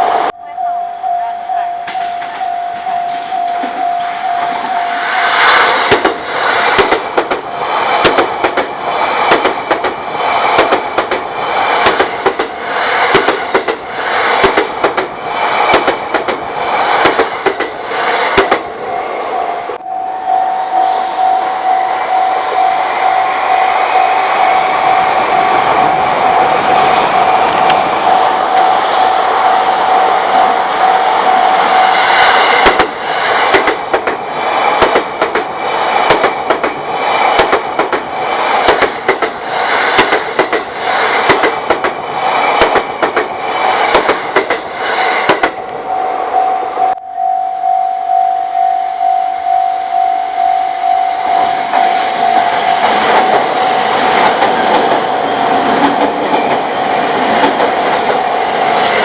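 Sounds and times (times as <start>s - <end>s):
level crossing alarm bell ringing: 0.3s - 5.2s, 19.3s - 27.4s, 45.9s - 54.1s
train wheels clattering over rail joints: 5.7s - 18.7s, 32.5s - 45.6s, 52.8s - 59.0s.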